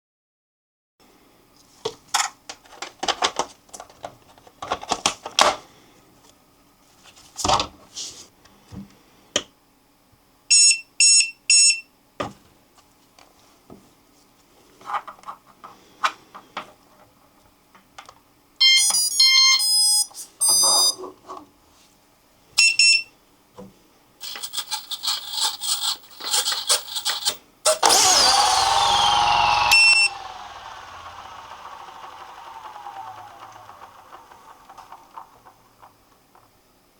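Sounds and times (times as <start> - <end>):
electronic beeps: 18.6 - 21.0, 29.7 - 30.2
electric motor whine: 27.7 - 36.1.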